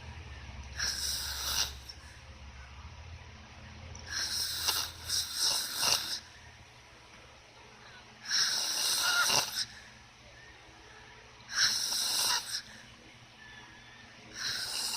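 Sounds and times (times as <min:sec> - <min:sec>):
person snoring: 0:00.8 - 0:02.0, 0:04.1 - 0:06.3, 0:08.2 - 0:09.8, 0:11.5 - 0:12.8, 0:14.3 - 0:14.9.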